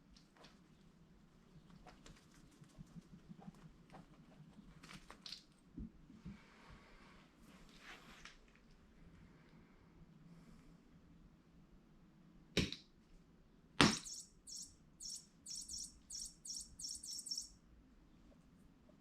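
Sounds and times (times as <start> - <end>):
toy bird chirping: 13.9 - 17.6.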